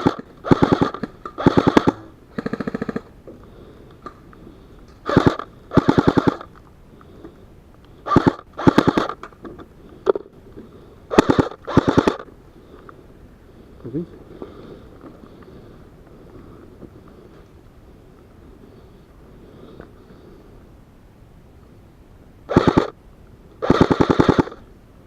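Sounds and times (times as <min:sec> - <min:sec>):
airsoft gun bursts: 0:00.0 - 0:03.1, 0:05.0 - 0:06.5, 0:08.0 - 0:09.2, 0:11.1 - 0:12.3, 0:22.5 - 0:23.0, 0:23.6 - 0:24.6.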